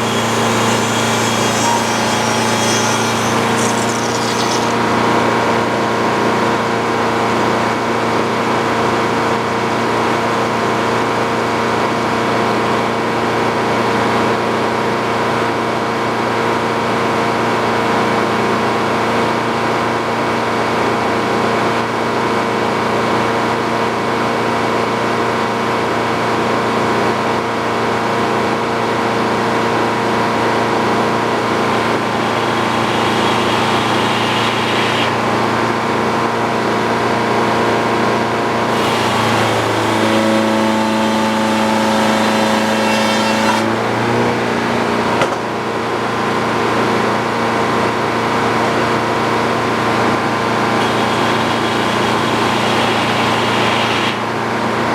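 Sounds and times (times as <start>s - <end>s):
sawmill engine running: 0.0s - 11.0s, 28.9s - 54.9s.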